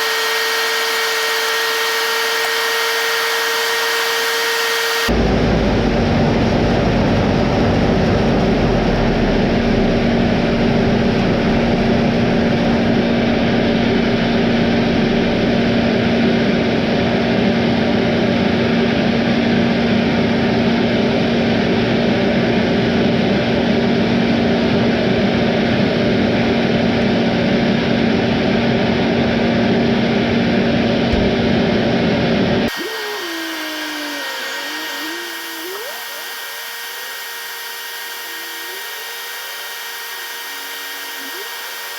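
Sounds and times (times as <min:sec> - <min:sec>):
heavy machinery diesel engine drone: 0:05.0 - 0:25.6.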